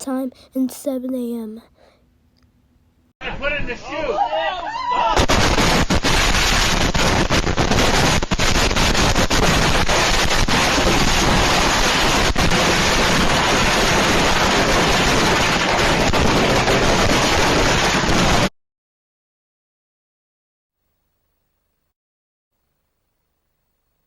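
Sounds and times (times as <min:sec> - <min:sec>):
harsh crackling noise with pops: 0:05.2 - 0:18.5.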